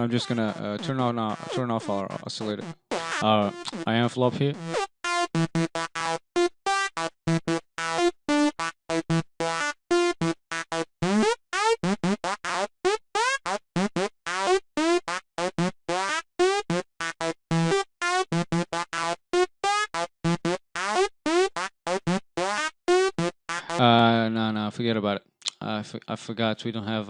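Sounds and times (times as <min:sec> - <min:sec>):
synth lead staccato notes: 0:00.0 - 0:14.6.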